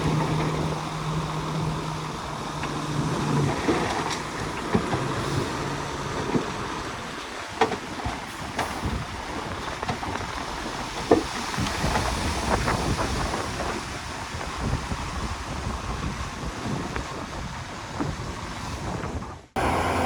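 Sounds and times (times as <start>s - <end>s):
heavy diesel machinery rumbling: 0.0s - 13.3s, 18.7s - 20.0s.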